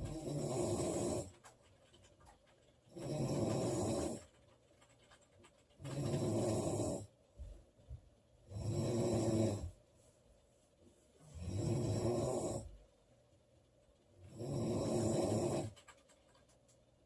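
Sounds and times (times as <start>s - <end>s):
woman snoring: 0.0s - 1.3s, 3.0s - 4.2s, 5.9s - 7.1s, 8.5s - 9.7s, 11.4s - 12.7s, 14.3s - 15.8s
quiet breathing: 0.0s - 1.6s, 2.8s - 4.5s, 5.5s - 13.2s, 14.2s - 16.0s.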